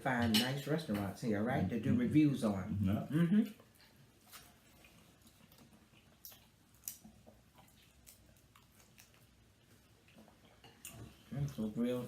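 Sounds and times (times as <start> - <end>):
person chewing food: 3.5 - 11.3.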